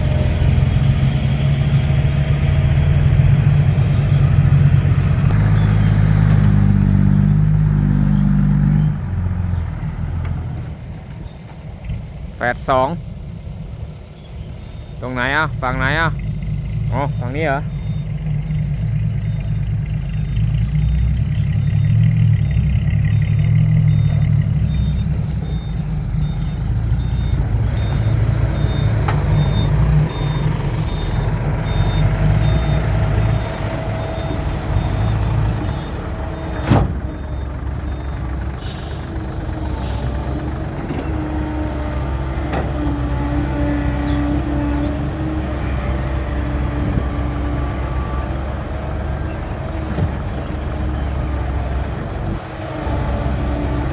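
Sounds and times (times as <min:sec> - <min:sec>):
truck diesel engine running: 0:00.0 - 0:53.9
reversing alarm beeping: 0:16.9 - 0:39.0
air brake release: 0:38.6 - 0:39.1.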